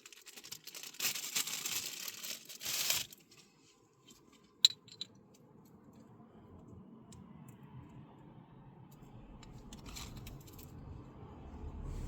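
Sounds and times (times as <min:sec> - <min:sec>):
plastic packaging crinkling: 0:00.0 - 0:03.4.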